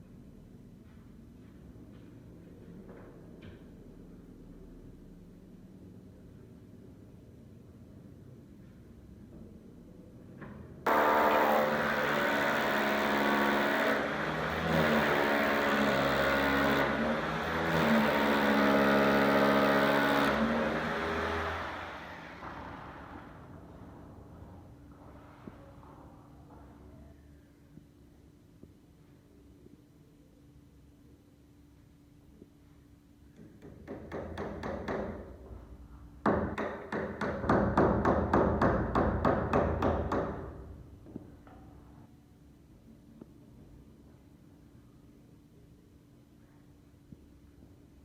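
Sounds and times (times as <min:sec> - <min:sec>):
power tool motor running: 0:10.9 - 0:23.4.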